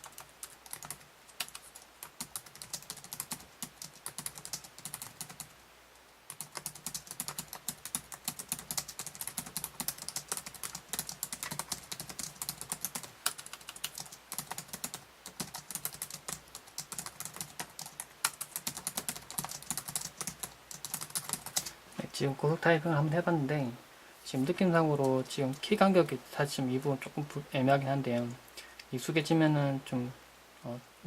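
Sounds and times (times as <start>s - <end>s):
fast typing on laptop keyboard: 0.0s - 5.5s, 6.3s - 21.7s.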